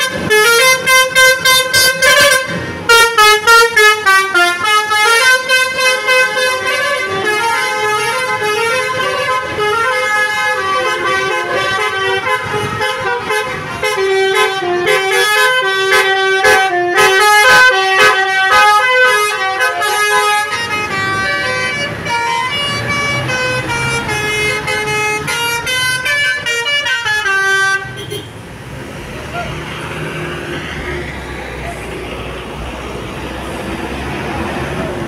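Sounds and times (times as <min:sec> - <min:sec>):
bus musical horn melody: 0:00.0 - 0:28.4
engine rumble: 0:27.8 - 0:35.0.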